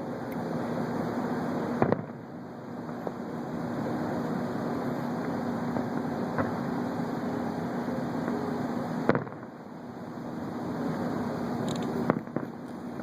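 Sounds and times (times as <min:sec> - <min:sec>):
constant low hum: 0:00.0 - 0:13.0
rumbling background noise: 0:00.0 - 0:13.0
distant fireworks pops: 0:01.8 - 0:02.2, 0:05.2 - 0:06.7, 0:08.2 - 0:09.6, 0:11.7 - 0:13.0.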